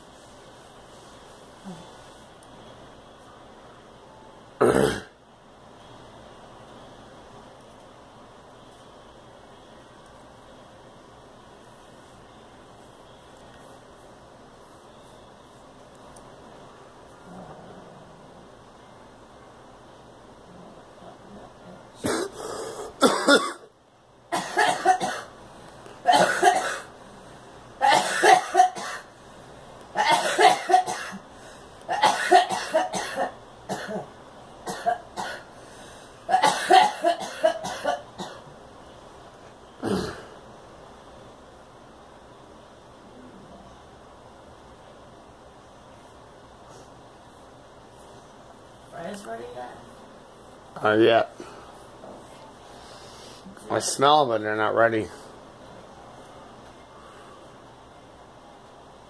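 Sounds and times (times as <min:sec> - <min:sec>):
low background hiss: 0:00.0 - 0:59.0
girl coughing: 0:04.6 - 0:05.1, 0:22.0 - 0:22.4, 0:23.0 - 0:23.6, 0:24.3 - 0:25.3, 0:26.1 - 0:26.9, 0:27.8 - 0:29.1, 0:30.0 - 0:31.2, 0:31.9 - 0:34.1, 0:34.7 - 0:35.5, 0:36.3 - 0:38.4.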